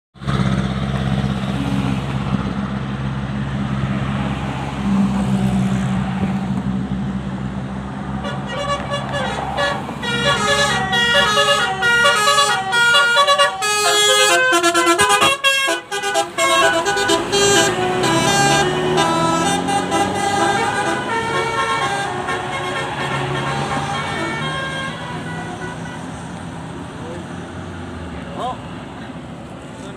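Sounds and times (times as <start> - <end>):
bus engine running: 0.2 - 29.9
musical bus horn melody: 8.2 - 26.4.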